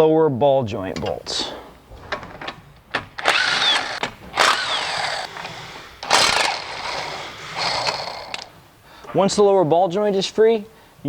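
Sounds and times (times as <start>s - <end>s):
impact wrench whining: 1.7s - 8.6s.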